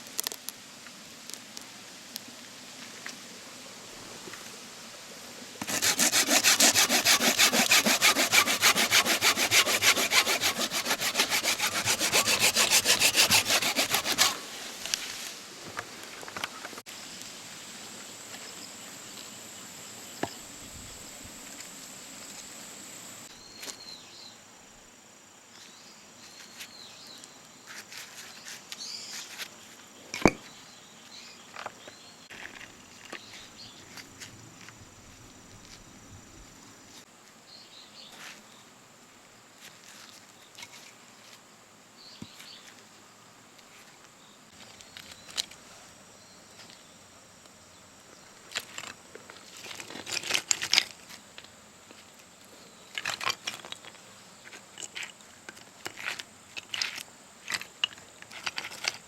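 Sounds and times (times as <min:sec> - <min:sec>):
high insect buzz: 0:05.6 - 0:14.6.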